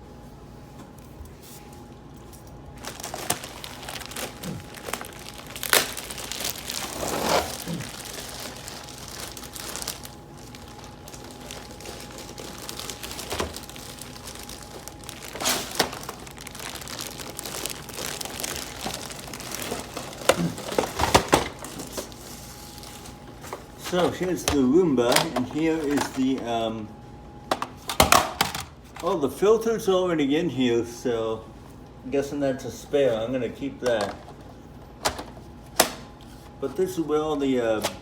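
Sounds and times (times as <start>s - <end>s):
packaging crinkling and rustling: 1.6s - 26.7s
crackles and knocks: 2.7s - 25.4s.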